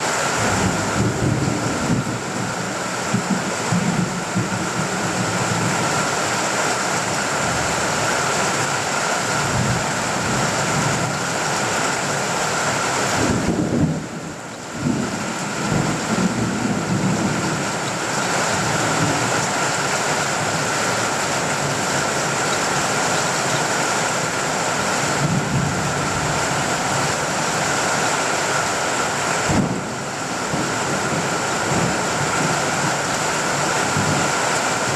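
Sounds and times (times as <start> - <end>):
heavy rain on a tin roof: 0.0 - 34.9
distant thunder rumbling: 0.4 - 6.1, 13.1 - 24.4, 25.0 - 27.1, 29.4 - 34.9.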